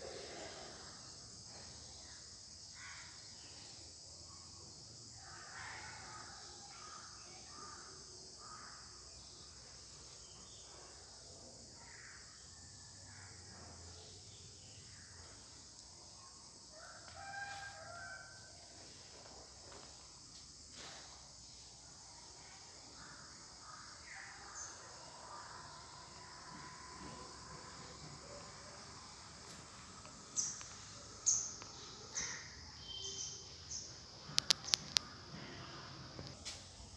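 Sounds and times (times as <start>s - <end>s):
insect chorus: 0.0s - 36.9s
bird calls: 30.0s - 36.4s.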